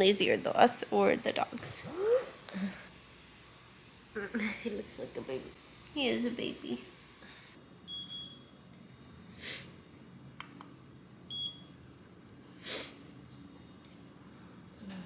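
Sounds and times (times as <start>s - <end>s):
short electronic beep: 7.9s - 8.5s, 11.3s - 11.7s
breathy sniff: 9.3s - 9.8s, 12.6s - 13.1s.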